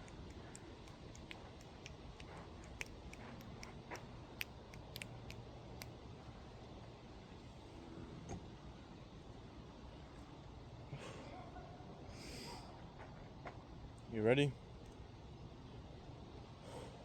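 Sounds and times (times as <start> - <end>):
sharp clicks and ticks: 0.0 - 5.9.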